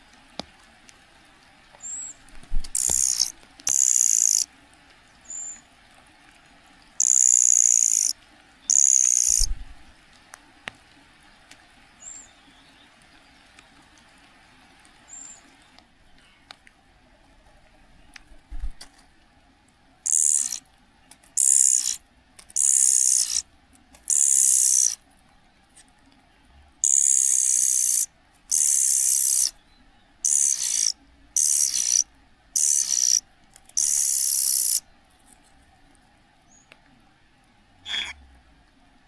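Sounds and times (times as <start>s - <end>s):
young cuckoo begging calls: 2.8s - 4.4s, 7.0s - 8.1s, 8.7s - 9.5s, 20.1s - 20.6s, 21.4s - 23.4s, 24.1s - 25.0s, 26.8s - 29.5s, 30.3s - 32.0s, 32.6s - 33.2s, 33.8s - 34.8s.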